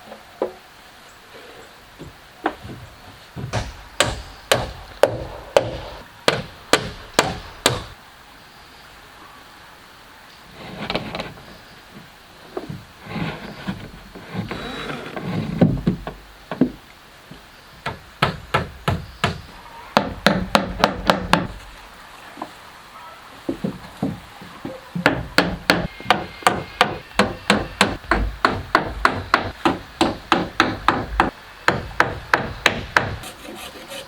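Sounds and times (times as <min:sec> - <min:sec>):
tool striking wood: 0:03.4 - 0:08.0, 0:17.8 - 0:21.5, 0:25.0 - 0:33.4
wood scraping and handling: 0:10.5 - 0:16.8, 0:33.2 - 0:34.0.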